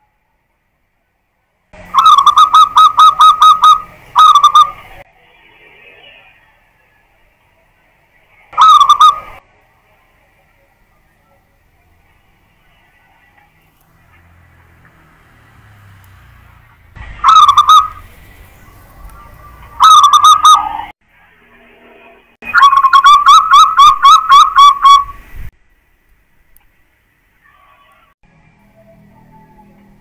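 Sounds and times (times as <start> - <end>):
dove cooing: 2.0 - 4.8, 8.6 - 9.4, 17.2 - 18.1, 19.4 - 20.9.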